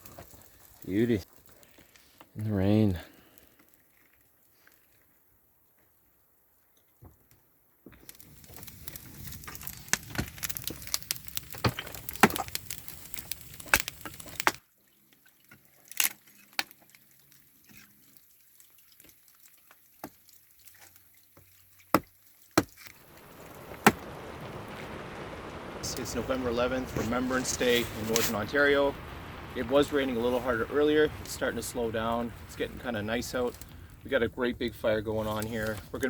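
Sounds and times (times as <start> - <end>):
campfire crackling and popping: 0.0 - 5.3, 7.9 - 36.0
fire hiss: 8.1 - 14.6, 22.8 - 36.0.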